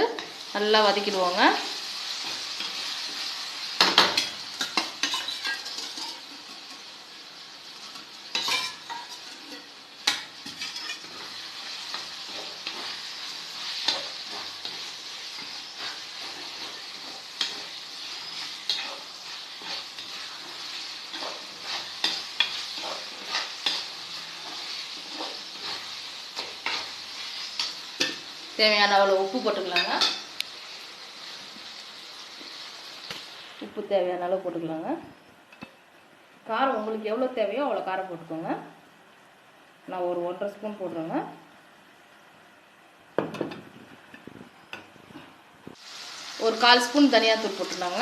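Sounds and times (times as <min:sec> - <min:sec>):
prawns sizzling in oil: 0:00.0 - 0:38.4, 0:39.0 - 0:48.0.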